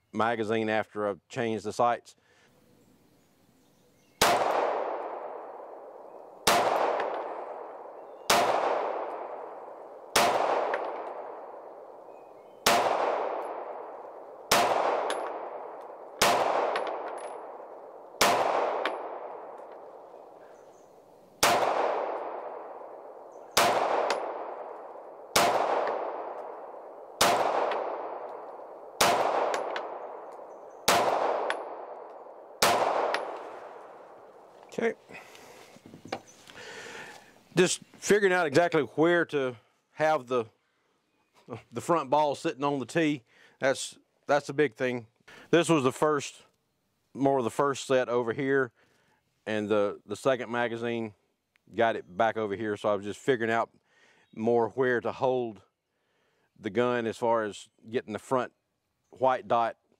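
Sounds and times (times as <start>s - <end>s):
pistol shots: 4.2s - 20.3s, 21.4s - 34.4s.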